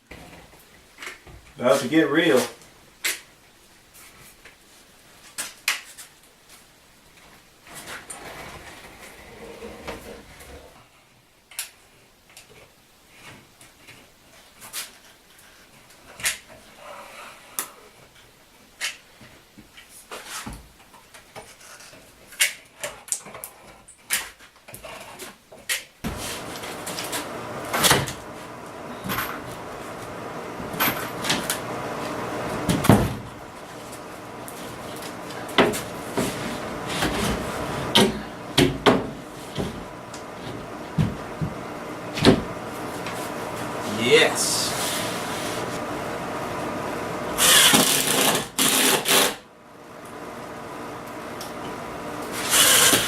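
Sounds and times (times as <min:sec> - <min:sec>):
steady hum: 0:26.1 - 0:48.7.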